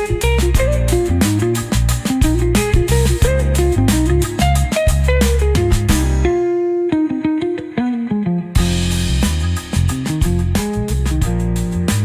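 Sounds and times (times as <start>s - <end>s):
guitar music with heavy bass: 0.0s - 12.0s.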